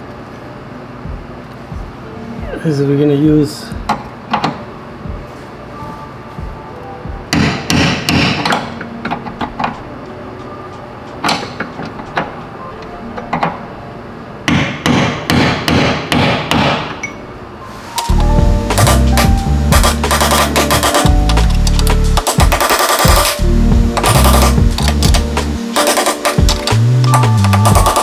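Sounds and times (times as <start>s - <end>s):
hammer striking metal: 7.3s - 8.8s, 14.5s - 17.2s, 18.0s - 23.4s, 24.0s - 28.0s.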